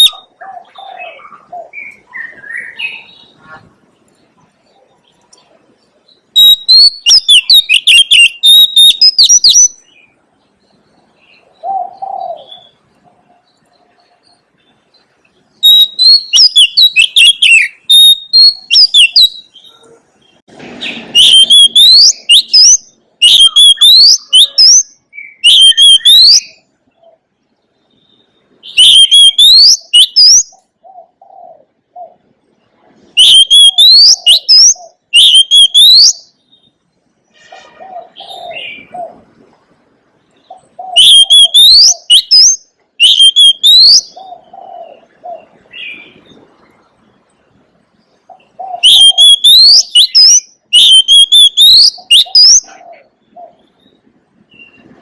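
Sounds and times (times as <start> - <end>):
bird singing whistled phrases: 0.0 - 3.5, 6.3 - 10.1, 15.6 - 19.8, 20.8 - 26.6, 28.0 - 30.6, 33.2 - 36.4, 40.9 - 44.2, 48.8 - 52.7.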